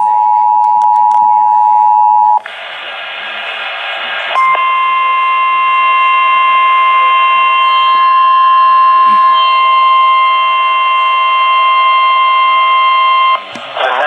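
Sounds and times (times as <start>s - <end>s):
radio static: 2.3s - 14.0s
steady distorted alert tone: 3.3s - 14.0s.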